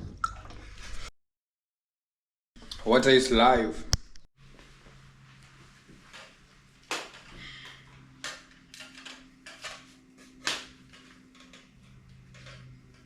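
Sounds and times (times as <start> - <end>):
hard objects clicking and knocking: 6.9 - 13.0.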